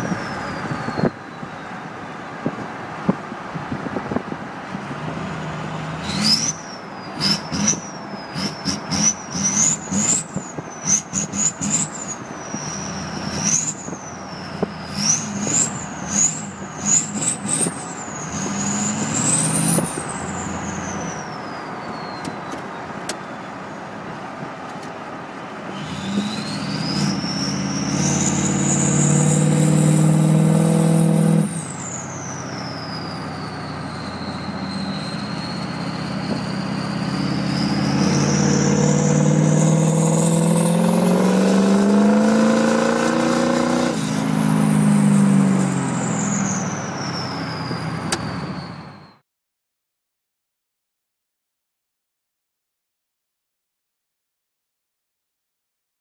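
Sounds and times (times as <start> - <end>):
turbocharger whistling: 0.0 - 1.7, 5.3 - 23.6, 25.7 - 49.2
diesel engine revving: 4.6 - 21.6, 25.6 - 49.0.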